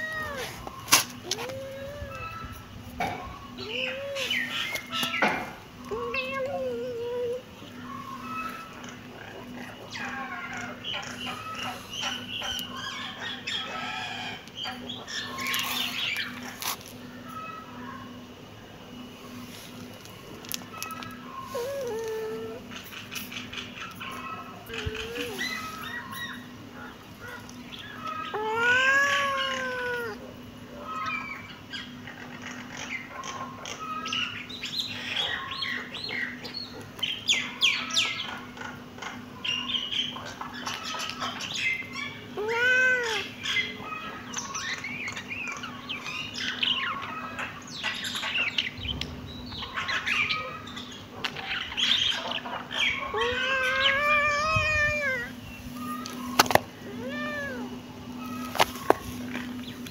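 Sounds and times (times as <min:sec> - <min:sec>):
kittens meowing: 0:00.0 - 0:02.6, 0:03.4 - 0:12.7, 0:20.8 - 0:22.7, 0:24.0 - 0:26.4, 0:27.2 - 0:30.3, 0:42.3 - 0:44.3, 0:53.0 - 0:59.6
kittens squeaking: 0:00.0 - 0:02.7, 0:03.4 - 0:12.7, 0:20.6 - 0:26.5, 0:28.1 - 0:30.2, 0:41.8 - 0:45.3, 0:52.9 - 0:59.6.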